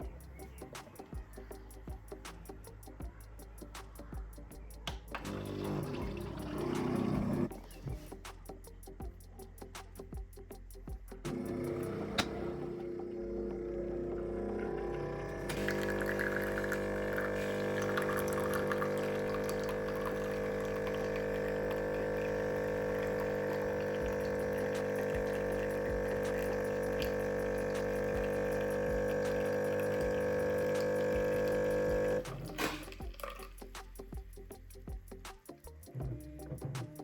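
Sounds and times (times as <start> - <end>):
coffee machine pump humming: 5.1 - 7.8, 11.3 - 33.4.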